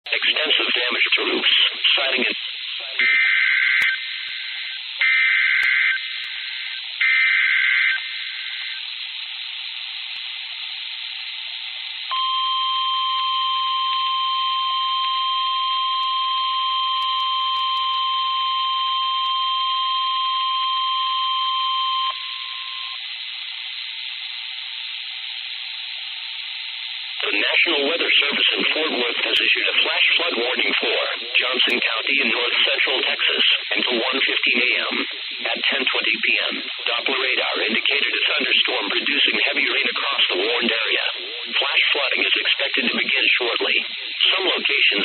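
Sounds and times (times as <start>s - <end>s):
radio hiss: 0.1s - 12.2s, 22.1s - 45.0s.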